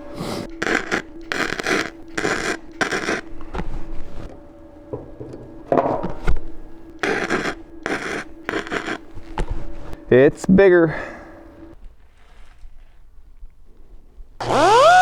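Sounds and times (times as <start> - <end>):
metal file scraping: 0.0 - 3.3, 7.0 - 9.3
faint steady hum: 0.0 - 15.0.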